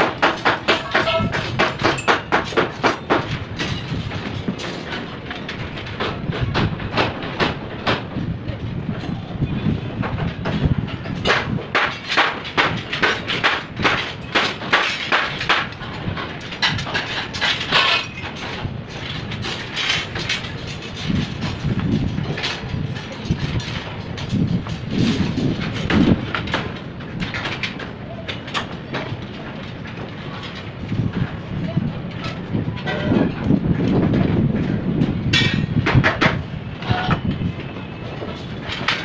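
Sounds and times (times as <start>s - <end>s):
rapid repeated knocks: 0.0s - 4.8s, 10.4s - 17.6s.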